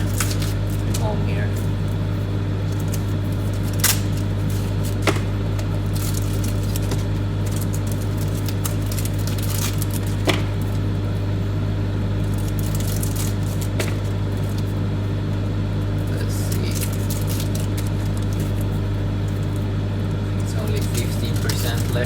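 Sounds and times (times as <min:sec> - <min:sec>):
microwave oven humming: 0:00.0 - 0:22.0
sharp clicks or crinkles: 0:02.6 - 0:10.8, 0:12.2 - 0:14.7.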